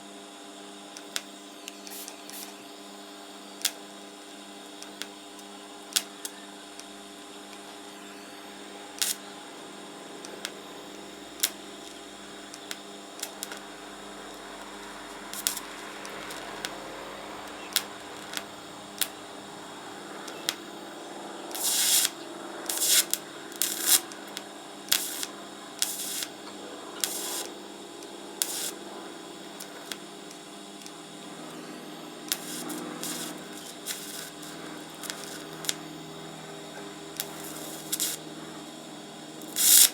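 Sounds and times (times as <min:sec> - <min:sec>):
welder arc humming: 0:00.0 - 0:39.9
welding arc crackles and pops: 0:00.6 - 0:39.9.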